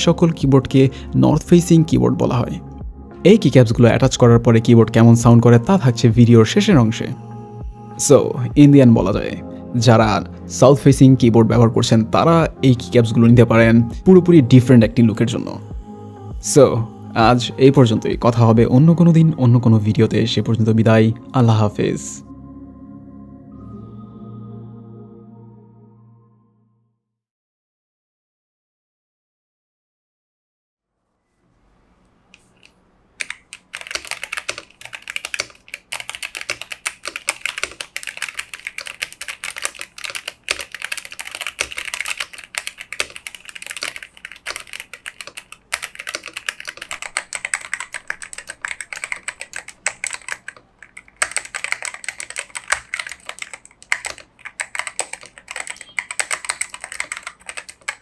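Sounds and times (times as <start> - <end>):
mechanical keyboard typing: 32.4 - 58.0.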